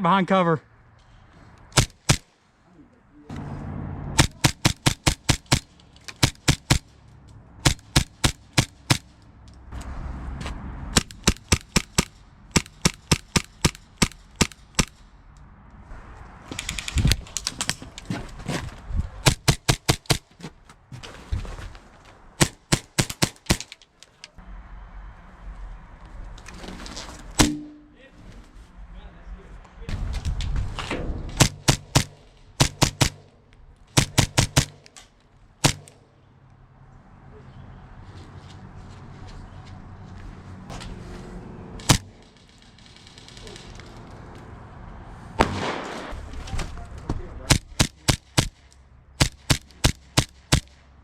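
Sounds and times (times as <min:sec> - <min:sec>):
airsoft pistols firing: 0:01.7 - 0:02.3, 0:04.2 - 0:06.9, 0:07.6 - 0:09.2, 0:10.9 - 0:15.0, 0:22.4 - 0:23.8, 0:31.4 - 0:33.3, 0:33.9 - 0:35.0, 0:35.6 - 0:36.0, 0:45.4 - 0:46.2, 0:47.5 - 0:48.6, 0:49.2 - 0:50.8.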